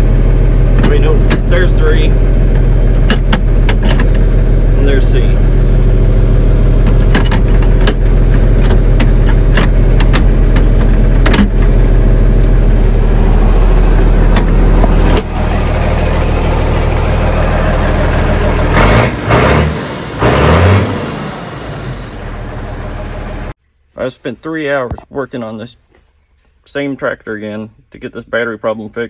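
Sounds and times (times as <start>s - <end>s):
tractor diesel engine running: 0.0s - 23.6s
swells rising and falling in pitch: 11.9s - 23.5s.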